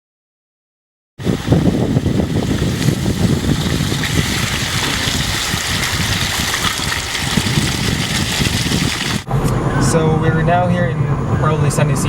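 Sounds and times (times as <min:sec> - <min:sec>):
car engine and road rumble: 0:07.0 - 0:12.0.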